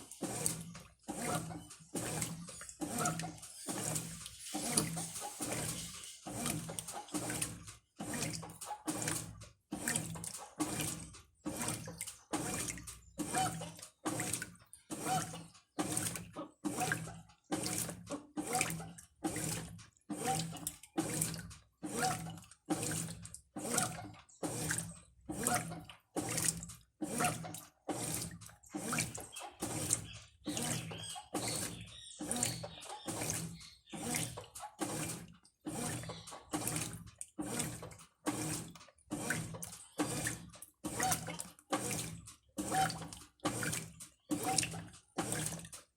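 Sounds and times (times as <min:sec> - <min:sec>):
washing machine motor hum: 0:00.0 - 0:45.9
washing machine water sloshing: 0:00.0 - 0:45.9.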